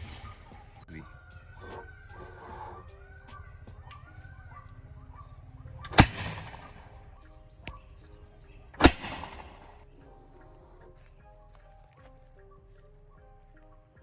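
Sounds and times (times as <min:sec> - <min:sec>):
bamboo cannon bangs: 0:05.8 - 0:07.2, 0:08.8 - 0:09.8.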